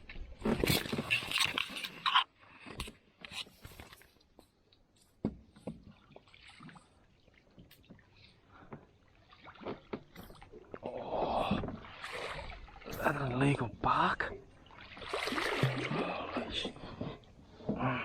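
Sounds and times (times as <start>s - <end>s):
knocks and scrapes in boat: 0.1s - 6.9s, 7.6s - 10.7s, 14.9s - 18.0s.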